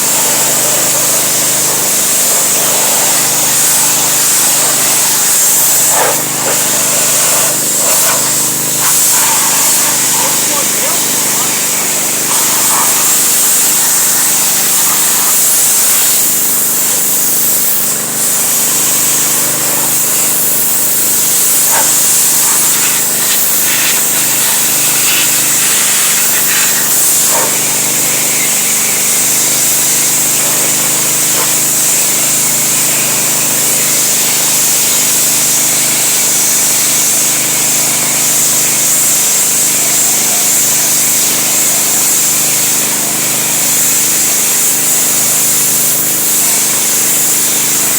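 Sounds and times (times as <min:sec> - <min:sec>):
motor running: 0:00.0 - 0:47.9
spray hiss: 0:00.0 - 0:47.9.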